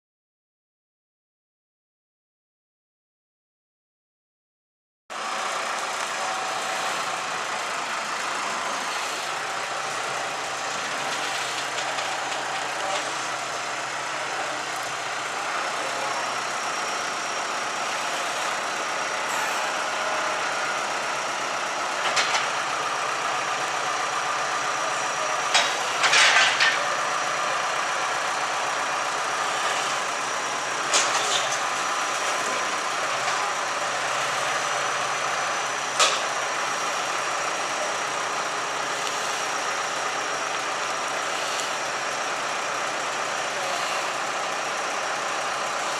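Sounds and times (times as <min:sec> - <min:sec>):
bonfire roaring: 0:05.1 - 0:45.9
fire popping: 0:09.6 - 0:16.0.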